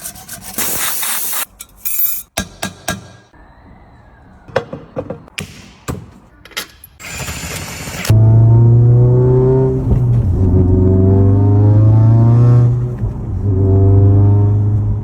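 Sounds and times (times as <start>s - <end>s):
car engine accelerating: 8.1s - 15.0s.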